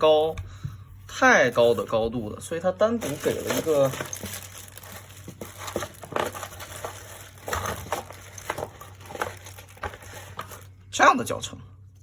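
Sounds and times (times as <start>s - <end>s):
packaging crinkling and rustling: 2.8s - 10.8s.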